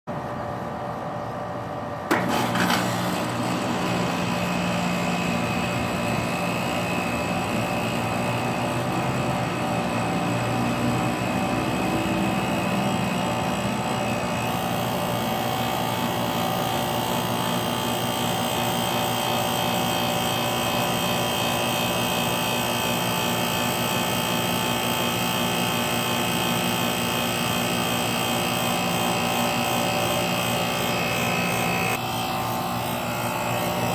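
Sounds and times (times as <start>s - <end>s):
air conditioner humming: 0.1s - 22.8s, 30.0s - 33.9s
air conditioner click: 2.0s - 6.8s.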